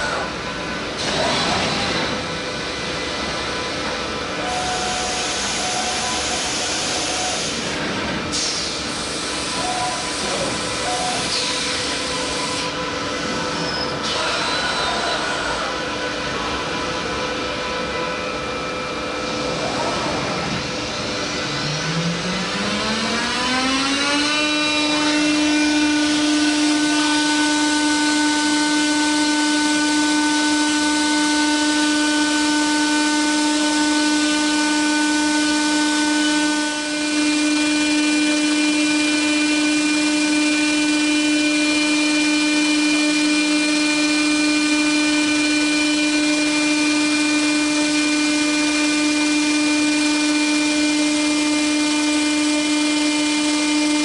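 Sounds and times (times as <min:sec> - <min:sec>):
cnc router spindle whine: 0:00.0 - 0:54.0
hiss of milling metal: 0:04.5 - 0:07.7, 0:08.3 - 0:12.7.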